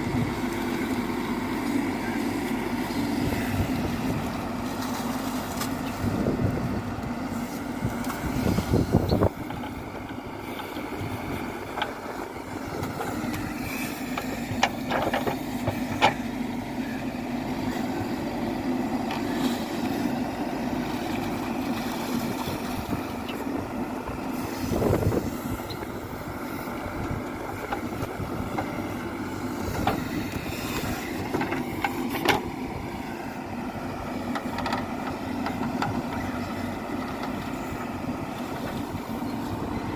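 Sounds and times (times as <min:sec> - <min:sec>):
diesel engines running: 0:00.0 - 0:39.9.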